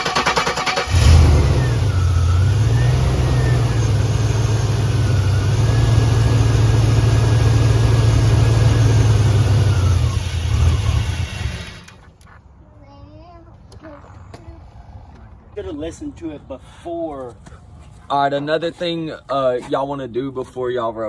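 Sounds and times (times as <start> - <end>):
car engine cranking and running: 0.0 - 12.0.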